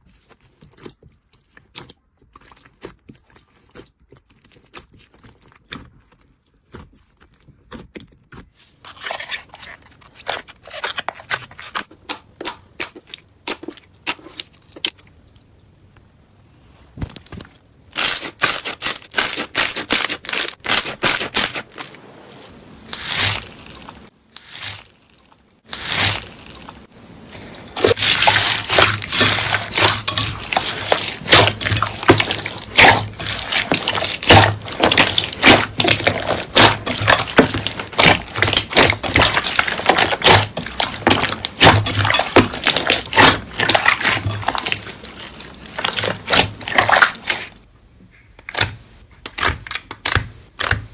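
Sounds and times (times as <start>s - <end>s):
slime crackling and popping: 18.0s - 47.6s.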